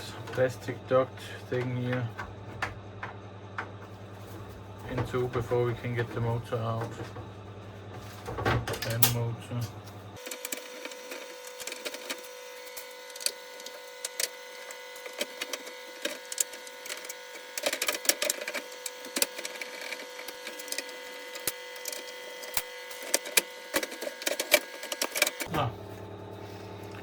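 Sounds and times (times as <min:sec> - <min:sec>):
plastic cracking and creaking: 0:10.2 - 0:25.5.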